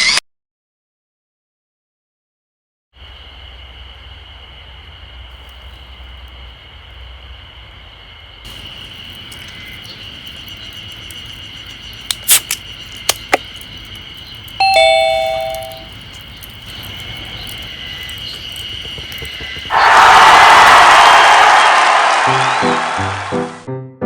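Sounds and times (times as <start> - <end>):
sharp clicks: 8.5 - 19.7
two-note ding-dong chime: 14.6 - 15.8.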